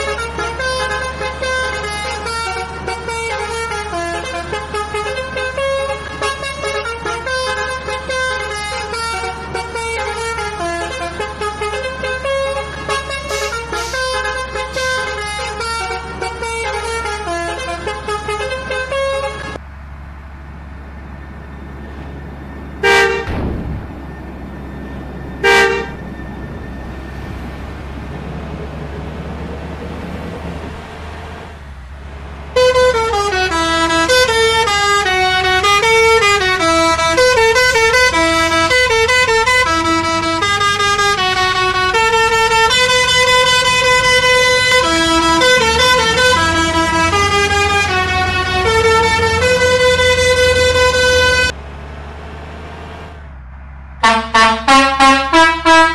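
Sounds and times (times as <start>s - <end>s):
multi-tone musical bus horn: 0.0s - 19.6s, 22.8s - 23.5s, 25.3s - 27.2s, 32.5s - 51.6s, 54.0s - 55.9s
short horn blasts: 0.0s - 19.6s, 22.8s - 23.8s, 25.4s - 26.0s, 32.6s - 51.5s, 54.0s - 55.9s.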